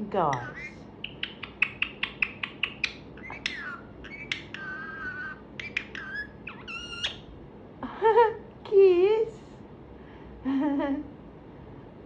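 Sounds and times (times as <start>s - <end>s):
parrot clicking and chirping: 0.3s - 7.3s
parrot whistling: 0.3s - 7.3s.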